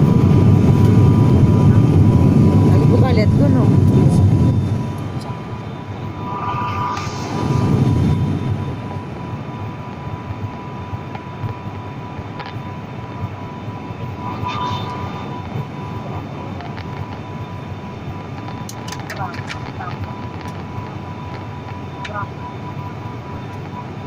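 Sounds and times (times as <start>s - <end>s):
airliner engine and airflow rumble: 0.0s - 24.0s
thin high tone: 5.6s - 8.4s, 13.9s - 16.5s.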